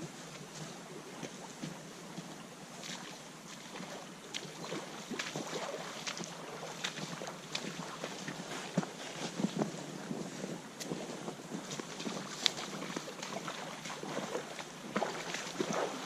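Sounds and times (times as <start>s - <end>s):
stream water running: 0.0s - 16.0s
sharp splashes and knocks: 11.9s - 16.0s.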